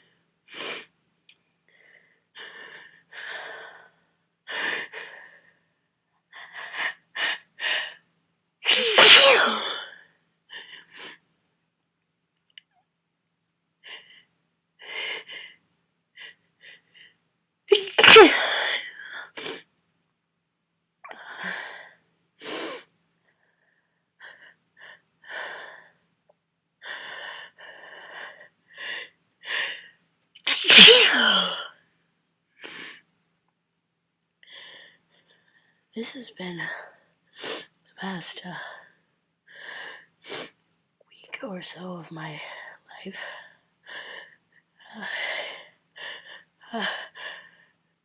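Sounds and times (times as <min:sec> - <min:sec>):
person sneezing: 0:08.7 - 0:09.8, 0:17.7 - 0:18.8, 0:30.5 - 0:31.7
person sniffing: 0:08.7 - 0:09.8, 0:17.7 - 0:18.7, 0:30.5 - 0:31.6.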